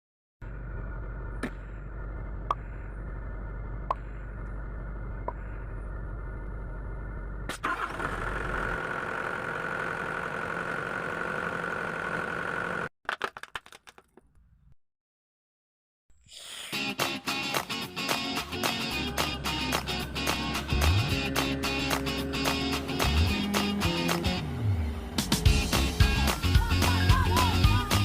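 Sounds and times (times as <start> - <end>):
excavator diesel engine running: 0.5 - 12.9, 18.4 - 27.7.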